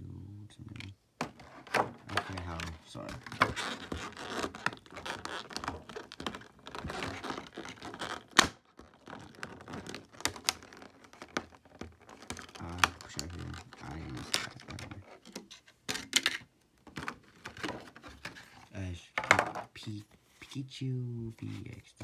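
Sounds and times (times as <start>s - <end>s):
cardboard packaging rustling: 1.2s - 18.6s.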